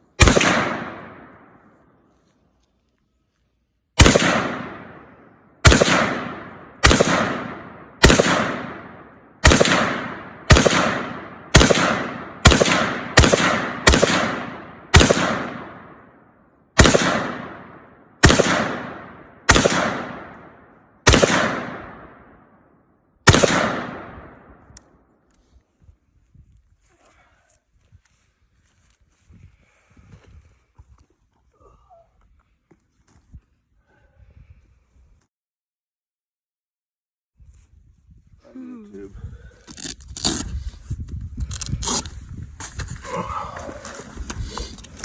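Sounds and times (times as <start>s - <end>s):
rifle shots: 0.2s - 1.7s, 4.0s - 16.2s, 16.8s - 22.6s, 23.2s - 24.6s.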